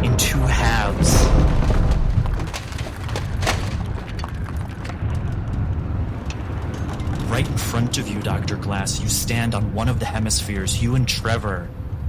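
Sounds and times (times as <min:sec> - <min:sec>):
debris splintering: 0:00.0 - 0:08.5
deep continuous rumble: 0:00.0 - 0:12.0
sharp cracks: 0:00.6 - 0:07.3.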